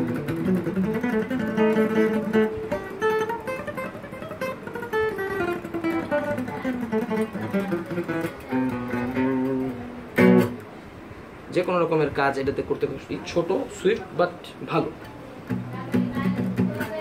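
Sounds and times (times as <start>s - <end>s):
guitar picked single notes: 0.0s - 10.7s.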